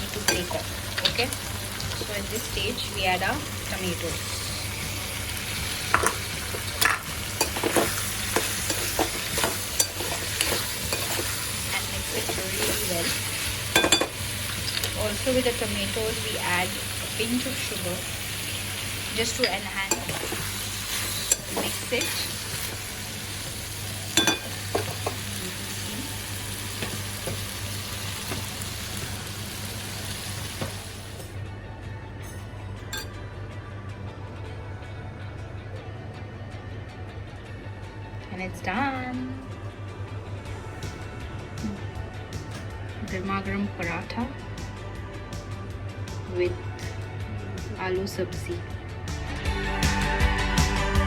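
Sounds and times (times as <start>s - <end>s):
frying sizzle: 0.0s - 31.4s
spoon scraping and knocking a pan: 5.8s - 14.9s, 19.4s - 25.3s.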